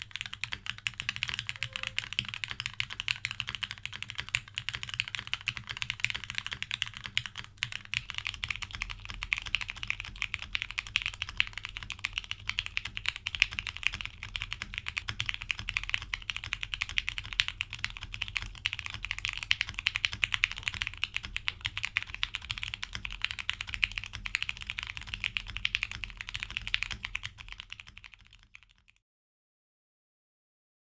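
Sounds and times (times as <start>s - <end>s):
mechanical keyboard typing: 0.0s - 29.0s.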